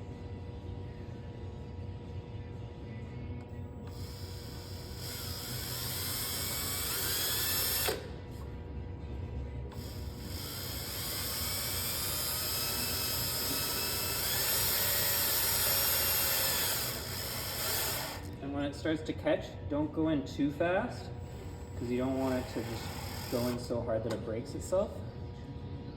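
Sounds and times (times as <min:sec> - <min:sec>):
power drill motor whining: 0:03.9 - 0:08.2, 0:09.7 - 0:18.3, 0:21.2 - 0:24.2.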